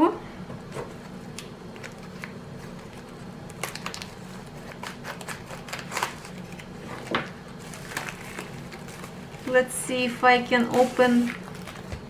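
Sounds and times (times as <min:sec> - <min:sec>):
low steady hum: 0:00.0 - 0:12.0
packaging clicks and crinkles: 0:01.3 - 0:09.6, 0:10.6 - 0:12.0.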